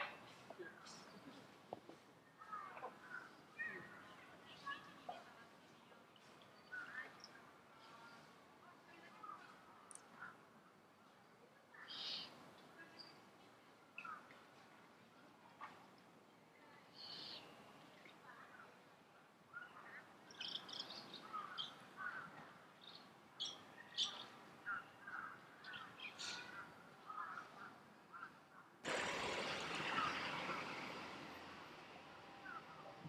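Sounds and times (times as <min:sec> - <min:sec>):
birds chirping: 0:28.9 - 0:33.0.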